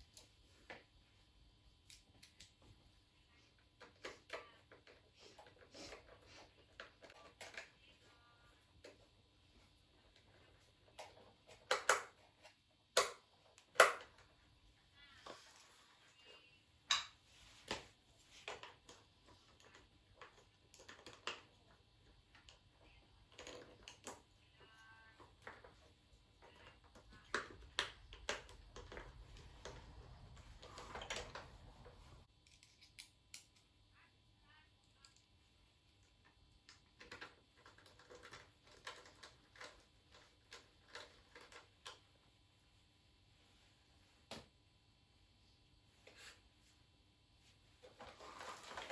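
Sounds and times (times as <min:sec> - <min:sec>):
faint clicking and tapping: 0:00.0 - 0:33.7.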